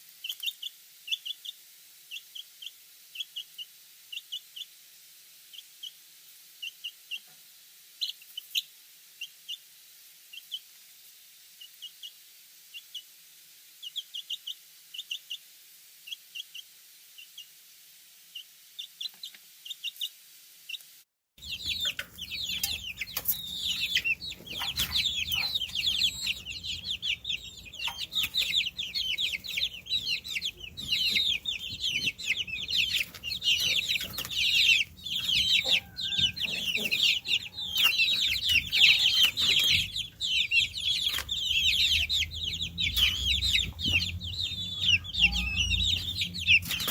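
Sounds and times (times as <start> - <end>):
chicks peeping: 0.2 - 4.8, 18.8 - 20.1, 21.4 - 46.9.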